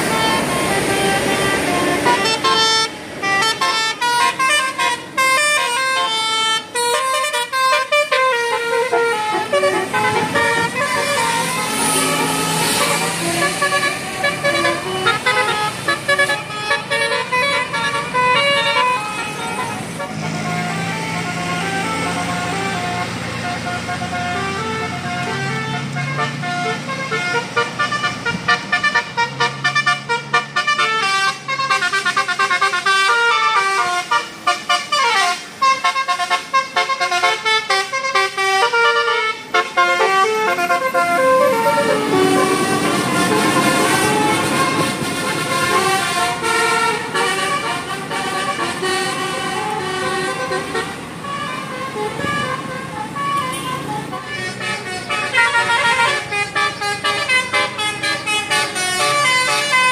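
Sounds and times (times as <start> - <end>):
multi-tone bus horns playing tunes: 0.0 - 59.9.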